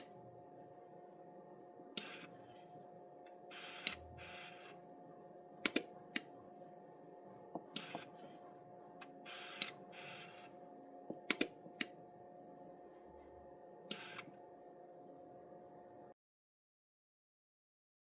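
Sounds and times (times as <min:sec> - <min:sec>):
faint steady hum: 0:00.0 - 0:16.2
keypad buttons clicking: 0:05.6 - 0:06.3, 0:11.1 - 0:12.0.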